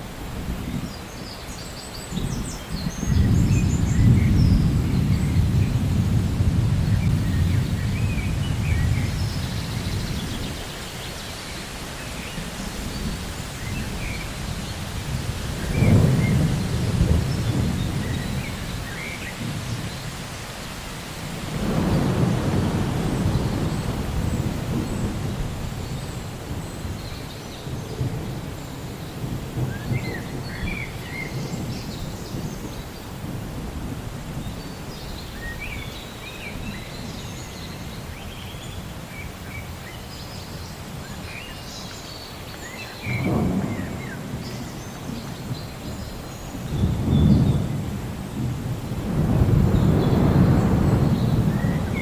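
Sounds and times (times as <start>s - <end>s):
steady rain falling: 0.0s - 52.0s
rolling thunder: 2.2s - 10.7s, 12.6s - 20.1s, 21.3s - 35.7s, 43.0s - 52.0s.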